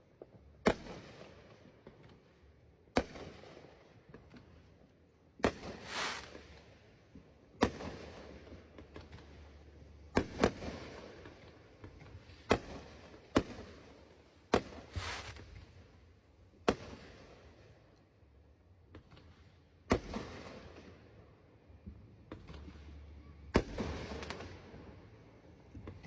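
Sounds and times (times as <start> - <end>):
fireworks bursting: 5.4 - 6.7, 10.1 - 16.0
fireworks crackling sizzle: 5.7 - 6.6, 14.6 - 15.8.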